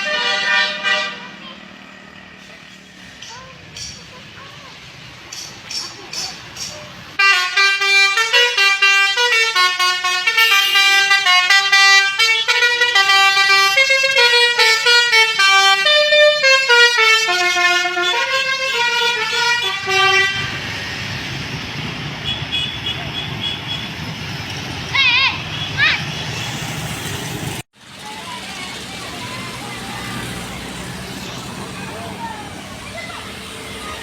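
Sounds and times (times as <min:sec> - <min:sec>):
multi-tone bus air horn melody: 0:00.0 - 0:01.4, 0:07.2 - 0:21.1.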